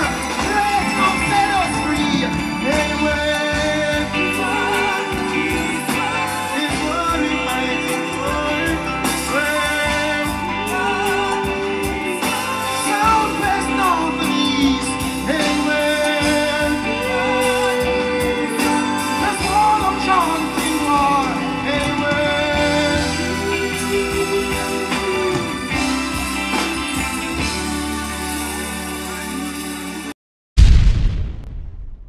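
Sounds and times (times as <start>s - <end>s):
live reggae band: 0.0s - 30.1s
person singing: 0.0s - 30.1s.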